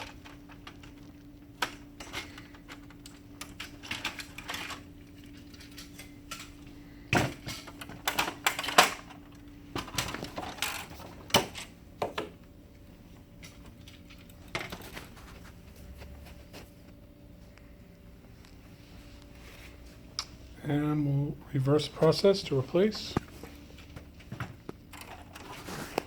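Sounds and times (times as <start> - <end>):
printer parts clicking and knocking: 0.0 - 12.3.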